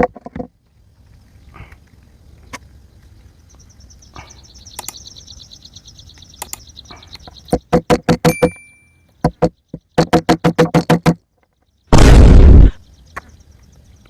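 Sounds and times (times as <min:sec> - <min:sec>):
light clicks: 0:04.7 - 0:05.0, 0:06.2 - 0:06.7
loud sharp knocks: 0:07.5 - 0:08.6, 0:09.2 - 0:11.2.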